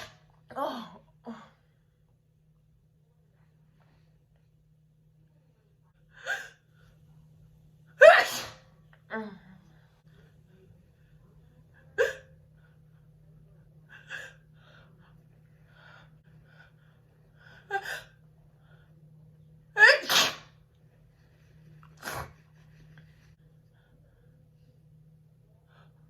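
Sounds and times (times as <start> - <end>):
woman sneezing: 8.0 - 8.8, 19.8 - 20.6.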